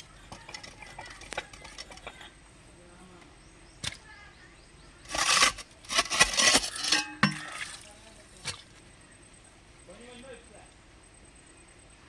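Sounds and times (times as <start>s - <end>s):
metal clinking on concrete: 0.0s - 2.4s, 5.1s - 7.9s.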